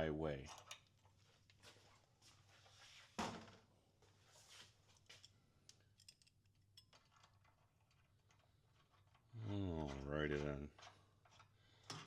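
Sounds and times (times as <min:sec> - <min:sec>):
metallic clinks and scrapes: 0:04.9 - 0:12.0.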